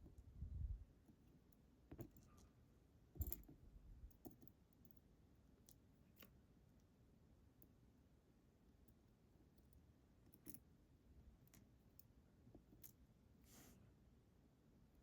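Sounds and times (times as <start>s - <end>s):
small metal lock parts clicking: 3.2s - 5.0s.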